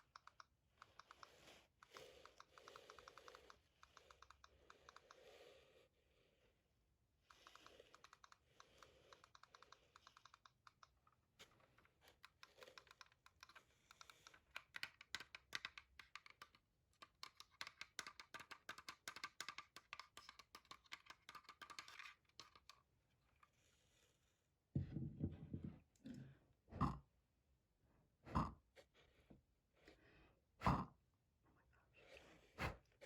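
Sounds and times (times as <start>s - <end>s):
fast keyboard typing: 12.2s - 22.8s.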